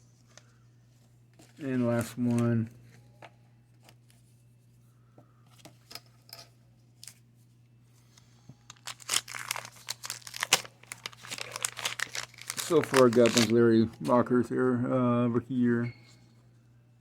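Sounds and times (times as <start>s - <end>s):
paper wrapper crinkling and tearing: 8.7s - 14.0s.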